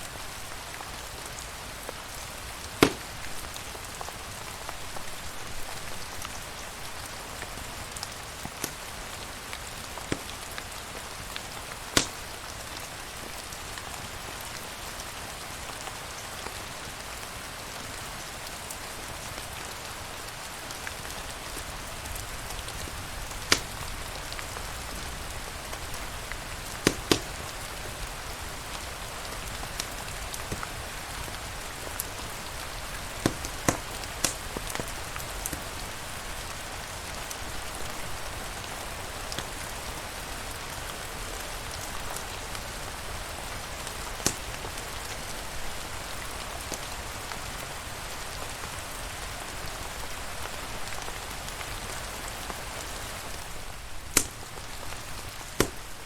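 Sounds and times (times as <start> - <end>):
steady rain falling: 0.0 - 56.0
sharp pops: 2.8 - 3.2, 10.1 - 10.4, 12.0 - 12.2, 23.3 - 24.0, 26.8 - 27.4, 33.2 - 34.9, 44.2 - 44.5, 54.0 - 54.6, 55.6 - 55.9.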